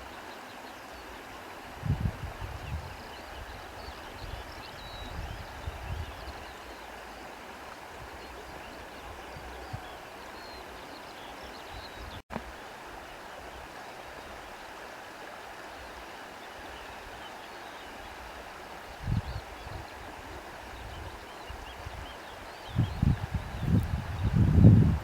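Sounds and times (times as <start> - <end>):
wind buffeting microphone: 1.7 - 6.5, 19.0 - 25.0.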